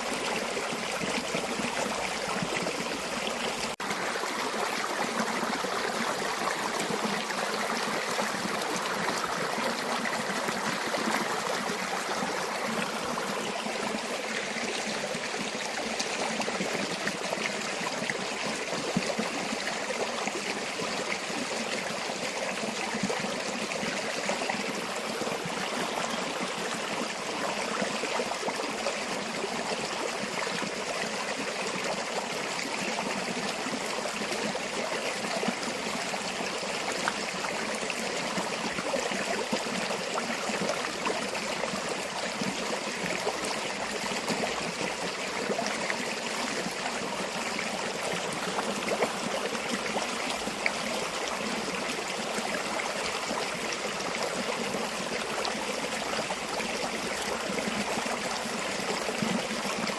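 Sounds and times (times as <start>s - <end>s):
stream flowing over rocks: 0.0s - 59.9s.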